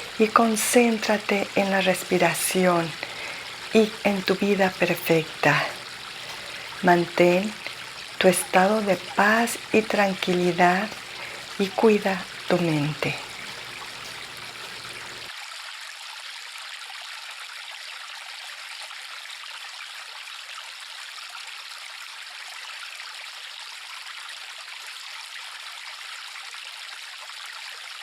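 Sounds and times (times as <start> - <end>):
river water flowing: 0.0 - 15.3.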